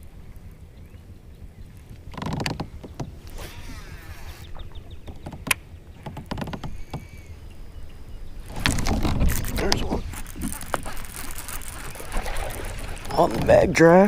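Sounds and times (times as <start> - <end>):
knocks and creaks of kayak hull: 1.3 - 14.0
short whir: 3.2 - 4.8.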